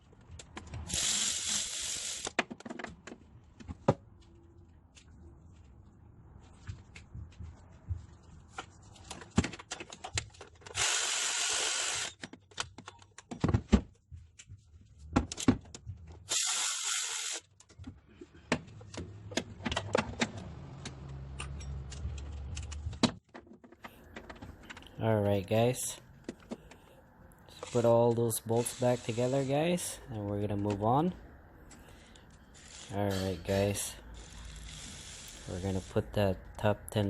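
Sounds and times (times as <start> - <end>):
power tool running bolts: 0.8 - 2.4, 10.7 - 12.2, 16.3 - 17.4, 32.5 - 36.0.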